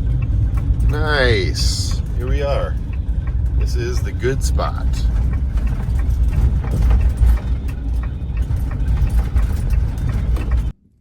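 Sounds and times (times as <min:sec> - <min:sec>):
van engine rumbling: 0:00.0 - 0:11.0.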